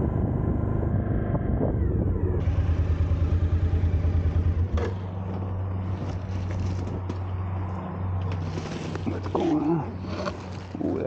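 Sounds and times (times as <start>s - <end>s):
motorcycle engine idling: 2.2s - 5.5s.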